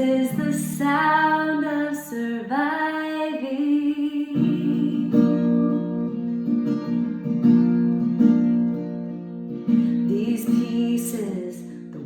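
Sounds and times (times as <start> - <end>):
acoustic guitar strumming chords: 4.2 - 12.0.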